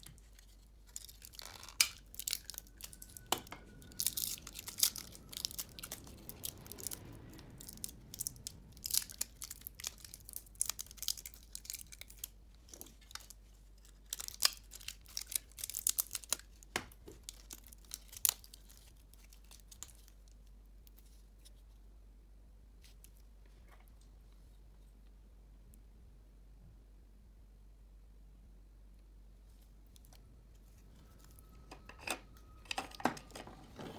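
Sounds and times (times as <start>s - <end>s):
crackling and tearing handling noise: 0.0s - 21.6s.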